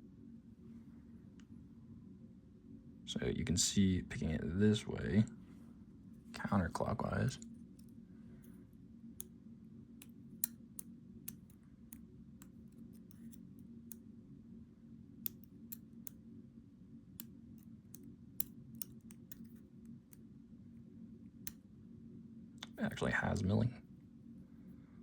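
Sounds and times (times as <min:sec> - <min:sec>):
small metal lock parts clicking: 0:10.0 - 0:13.5, 0:17.6 - 0:20.2.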